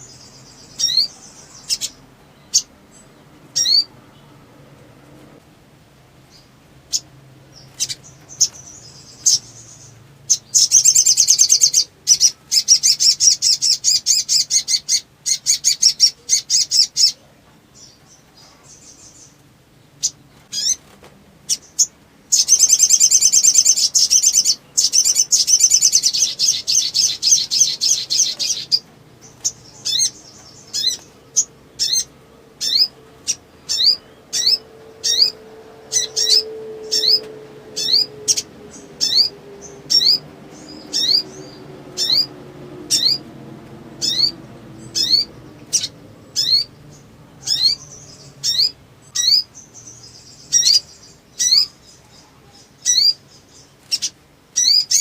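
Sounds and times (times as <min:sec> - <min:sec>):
bird trilling: 0:00.0 - 0:02.7, 0:03.5 - 0:04.0, 0:06.3 - 0:17.2, 0:21.5 - 0:43.3, 0:44.0 - 0:51.8
bird chirps: 0:00.0 - 0:04.4, 0:06.3 - 0:43.3, 0:43.9 - 0:55.0
quick rising bird notes: 0:29.4 - 0:46.8.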